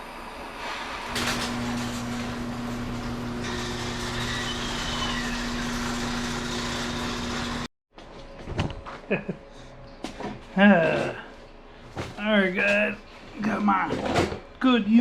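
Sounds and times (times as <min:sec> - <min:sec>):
gas torch burning with rushing hiss: 0:01.0 - 0:07.7.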